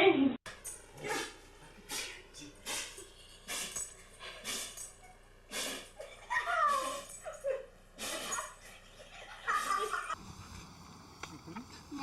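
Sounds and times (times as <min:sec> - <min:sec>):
dog sneezing: 0:01.0 - 0:04.9, 0:05.5 - 0:05.9, 0:06.6 - 0:07.2, 0:08.0 - 0:08.6.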